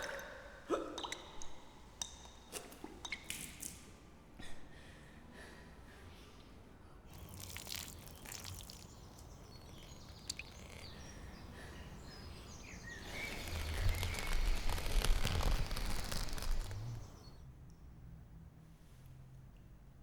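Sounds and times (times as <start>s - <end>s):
faint bird chirps: 7.1s - 17.5s.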